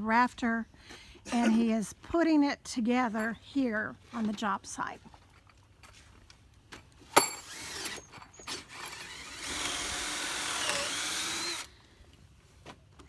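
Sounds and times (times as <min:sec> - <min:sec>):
power drill driving screw: 0:07.1 - 0:11.7.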